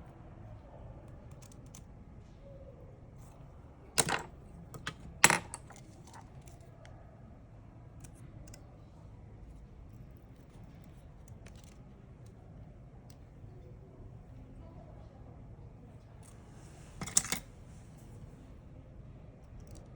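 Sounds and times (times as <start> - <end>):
small tools clinking on bench: 4.0 - 6.2, 17.0 - 17.5.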